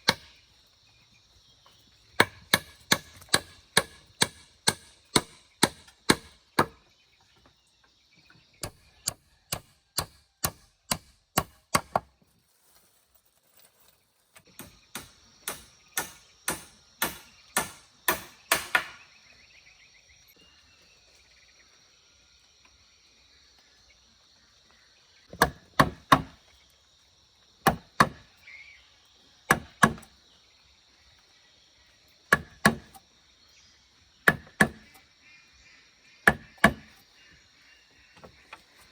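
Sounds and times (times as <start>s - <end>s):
hand tool chopping wood: 2.2s - 6.8s, 8.6s - 12.1s, 14.5s - 19.0s, 25.3s - 26.4s, 27.6s - 28.3s, 29.5s - 30.1s, 32.3s - 33.0s, 34.2s - 35.0s, 36.3s - 36.9s.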